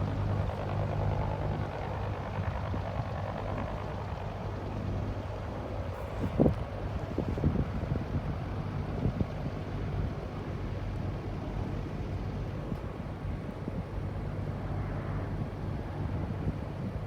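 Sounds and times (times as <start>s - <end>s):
helicopter rotor drone: 0.0s - 17.0s
wind buffeting microphone: 5.3s - 9.6s.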